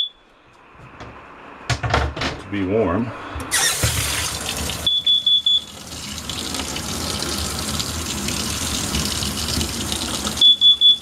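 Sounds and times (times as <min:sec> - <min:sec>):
faucet running: 0:03.5 - 0:11.0.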